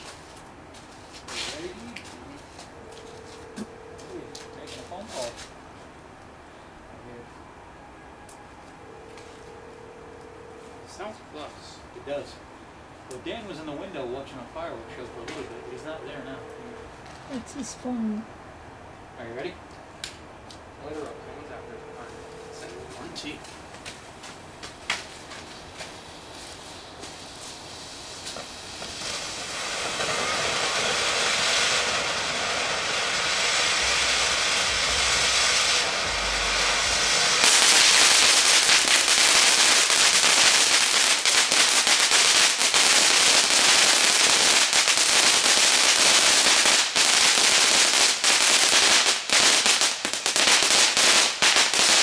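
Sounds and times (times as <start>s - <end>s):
firework hissing: 0.0s - 3.8s, 24.2s - 52.0s
firework crackling pops: 23.2s - 52.0s.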